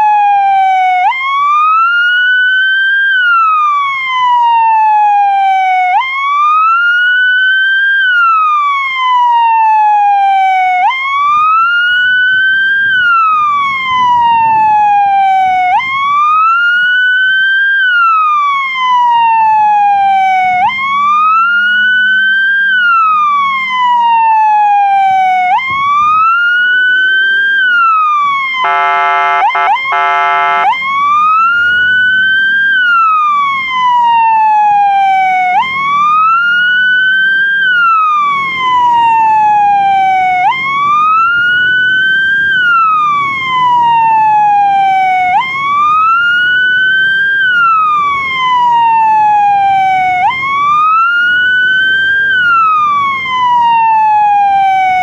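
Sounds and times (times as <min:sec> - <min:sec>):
fire engine siren wailing: 0:00.0 - 0:55.0
vehicle horn: 0:28.6 - 0:30.8.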